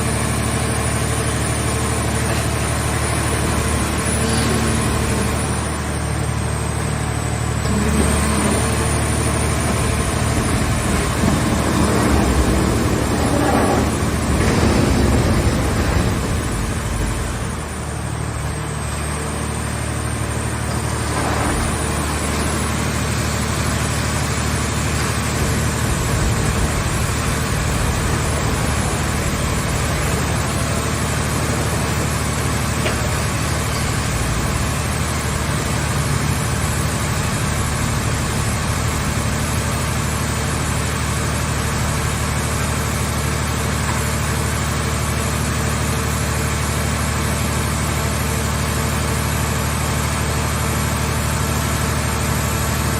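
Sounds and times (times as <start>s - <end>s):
baler engine droning: 2.1s - 39.2s.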